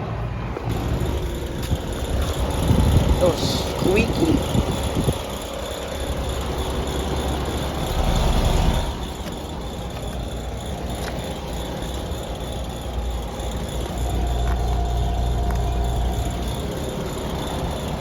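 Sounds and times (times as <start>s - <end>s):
air conditioner unit humming: 0.7s - 18.0s.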